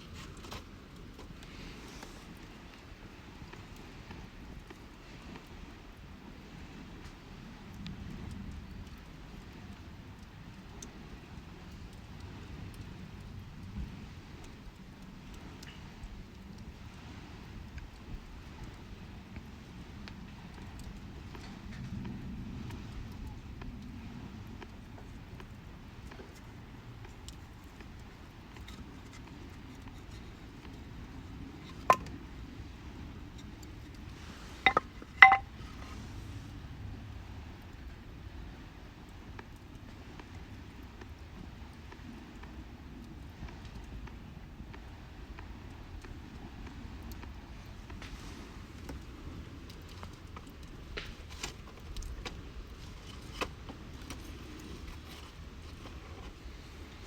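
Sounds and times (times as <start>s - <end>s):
campfire burning: 0.0s - 57.0s
fire crackles: 0.0s - 57.0s
firewood popping: 24.9s - 35.9s, 47.9s - 56.7s.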